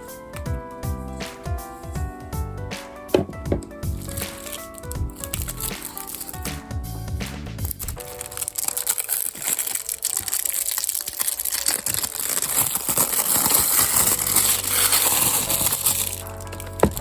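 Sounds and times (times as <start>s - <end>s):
plastic packaging crinkling: 3.2s - 6.6s, 7.6s - 17.0s.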